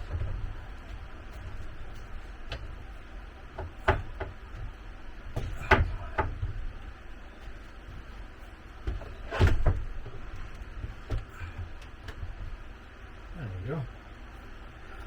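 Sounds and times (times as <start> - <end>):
building work knocks and clunks: 0.0 - 2.9, 3.5 - 6.8, 8.8 - 12.7
low steady rumble: 0.0 - 15.0.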